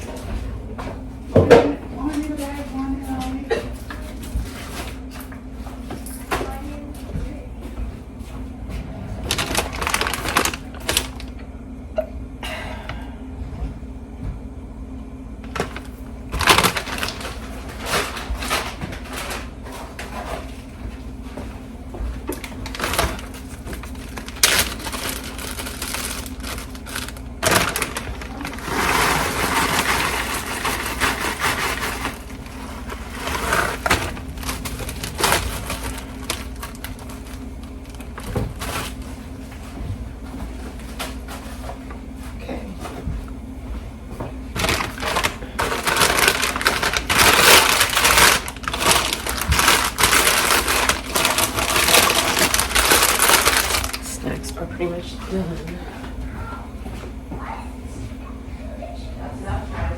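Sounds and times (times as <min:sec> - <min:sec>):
packaging crinkling: 0:09.2 - 0:11.4, 0:15.4 - 0:19.5, 0:22.3 - 0:39.2, 0:44.5 - 0:54.2.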